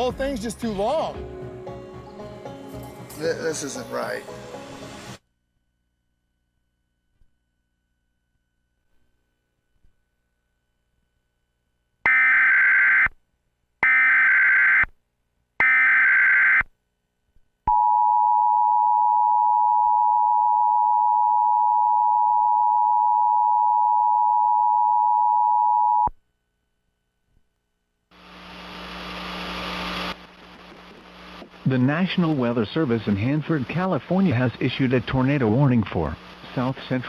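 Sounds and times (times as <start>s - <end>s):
noisy buzz: 28.0s - 37.0s.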